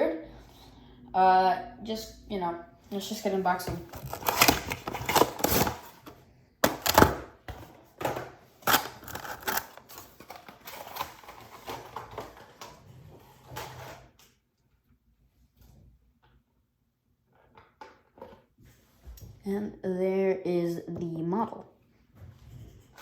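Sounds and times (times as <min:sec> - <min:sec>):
packaging rustling and scraping: 0:03.6 - 0:14.2.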